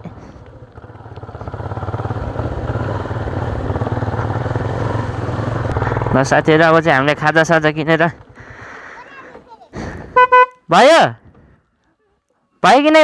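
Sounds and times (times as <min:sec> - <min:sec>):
motorcycle engine running: 0:00.0 - 0:09.4.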